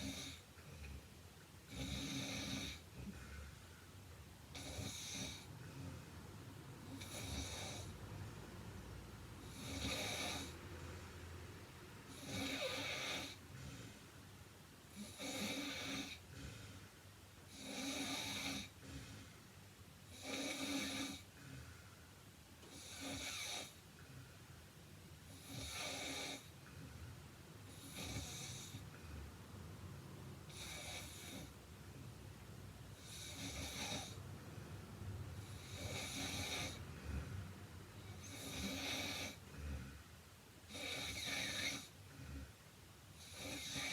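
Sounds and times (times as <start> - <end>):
woman snoring: 1.7 - 3.1, 4.5 - 6.0, 6.8 - 8.0, 9.4 - 10.6, 12.1 - 13.5, 14.9 - 16.3, 17.5 - 18.8, 20.1 - 21.3, 22.7 - 23.8, 25.3 - 26.5, 27.7 - 29.0, 30.5 - 31.6, 33.0 - 34.2, 35.4 - 37.4, 38.0 - 40.0, 40.7 - 42.5, 43.2 - 43.9.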